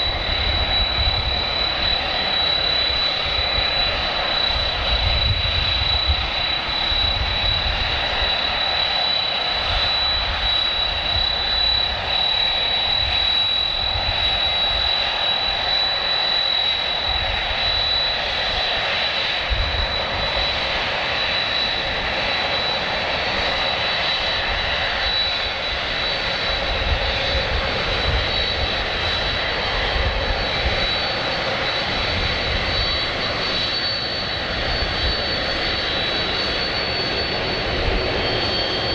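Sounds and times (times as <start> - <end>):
high-pitched engine whine: 0.0 - 38.9
jet engines running: 0.0 - 38.9.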